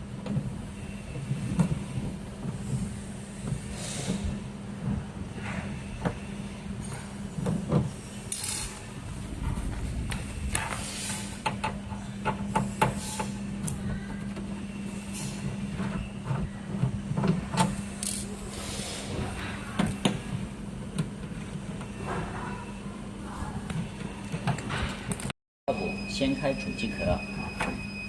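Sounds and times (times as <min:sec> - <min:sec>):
steady low hum: 0:00.0 - 0:28.0
tools and parts clinking: 0:08.3 - 0:08.7, 0:17.2 - 0:18.3.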